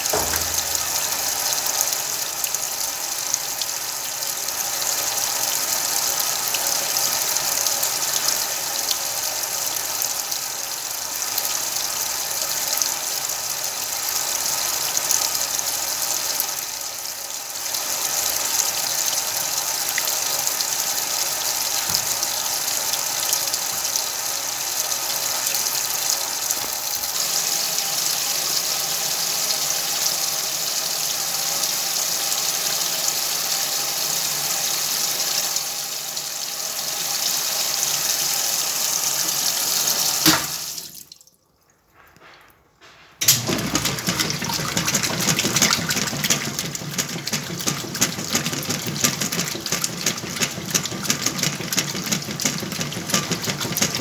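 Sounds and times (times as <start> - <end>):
washing machine running: 0.0 - 3.3, 38.0 - 41.0, 42.9 - 54.0.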